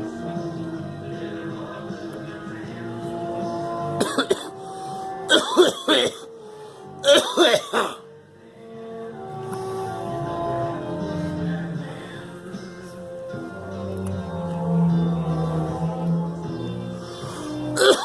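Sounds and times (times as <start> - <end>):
girl coughing: 4.0 - 4.6, 5.3 - 6.3, 7.0 - 8.0, 17.8 - 18.0.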